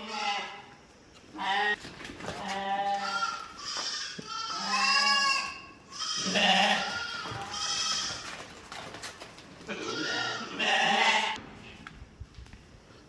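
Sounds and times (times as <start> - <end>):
goats bleating: 0.0 - 0.7, 2.4 - 8.4, 9.7 - 11.4.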